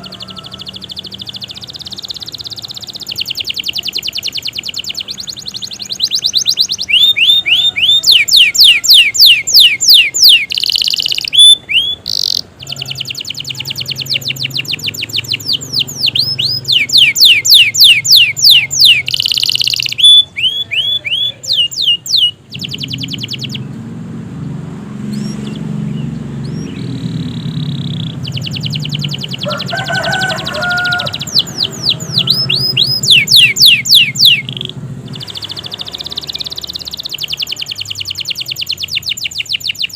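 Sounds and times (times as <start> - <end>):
canary singing trills: 0.0 - 39.9
low hum: 22.6 - 29.4.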